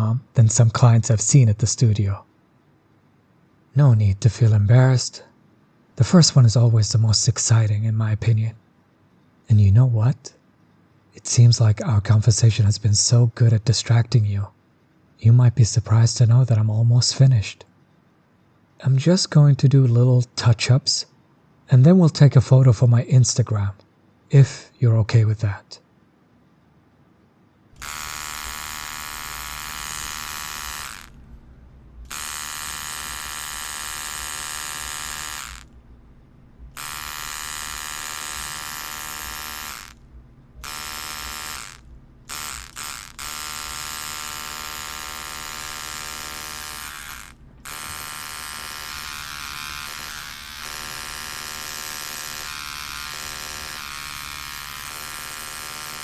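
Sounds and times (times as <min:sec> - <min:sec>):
tattoo machine buzzing: 0:27.8 - 0:31.2, 0:32.0 - 0:35.8, 0:36.6 - 0:56.0.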